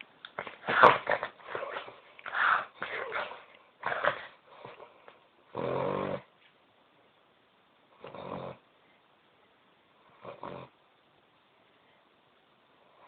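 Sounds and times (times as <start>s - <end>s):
dog snoring: 5.5s - 6.3s, 8.0s - 8.7s, 10.1s - 10.8s.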